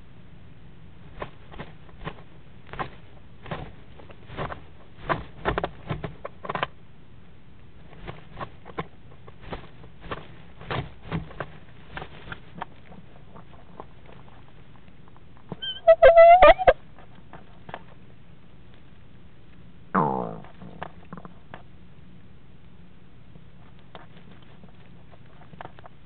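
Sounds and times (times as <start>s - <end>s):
owl scratching in wooden box: 1.1s - 6.7s, 7.8s - 14.8s.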